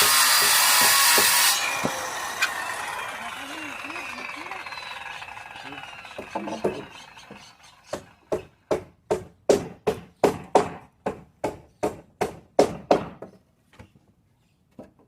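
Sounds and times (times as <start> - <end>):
rapid strikes on wood: 0.0 - 2.0, 6.2 - 13.4.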